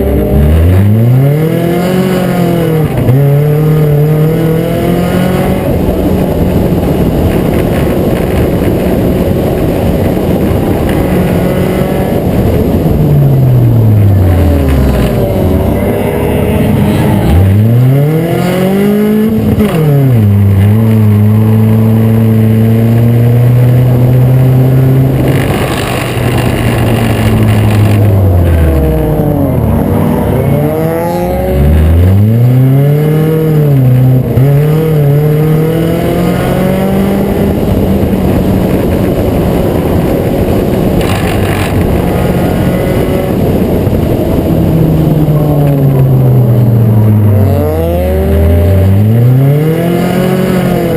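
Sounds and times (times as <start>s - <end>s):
race car engine running hard: 0.0s - 50.9s.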